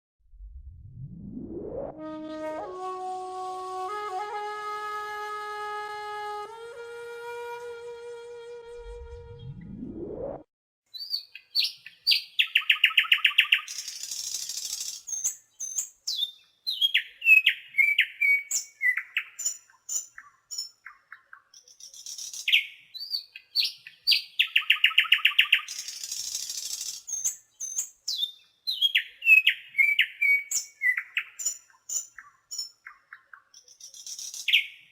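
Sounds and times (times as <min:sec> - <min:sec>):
nightingale singing: 0:10.9 - 0:34.9.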